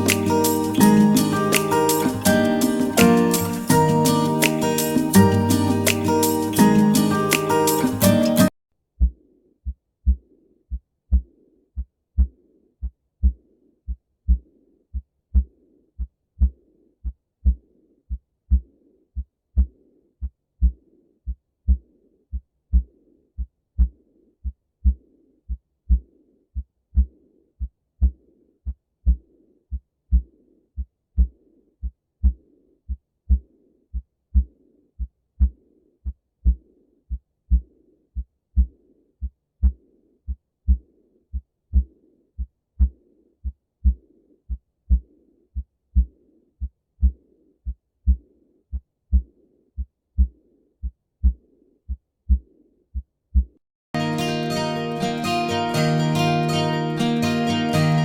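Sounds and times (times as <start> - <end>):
heartbeat: 9.0 - 33.5, 34.3 - 53.6.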